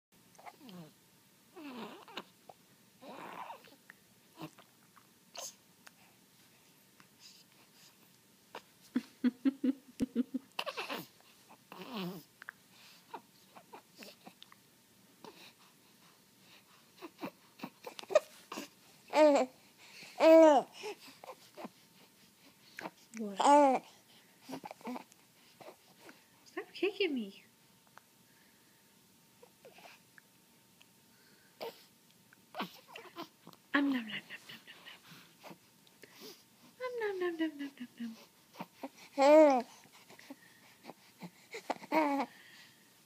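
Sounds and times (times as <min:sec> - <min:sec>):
baby lip smacks and clicks: 0:12.4 - 0:12.6.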